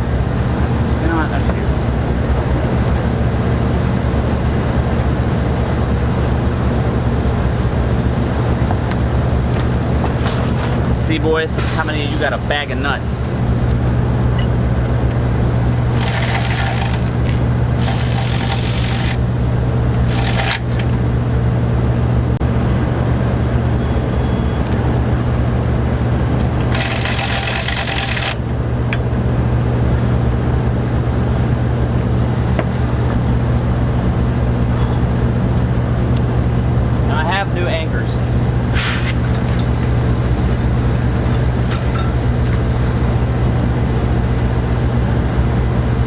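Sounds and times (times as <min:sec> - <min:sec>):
steady low hum: 0:00.0 - 0:46.0
metal nuts rattling in a bag: 0:16.0 - 0:17.1.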